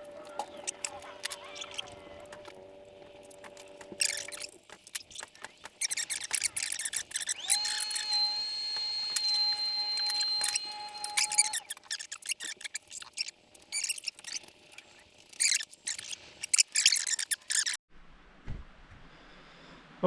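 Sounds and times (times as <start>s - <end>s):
small electric motor whining: 0.0s - 17.8s.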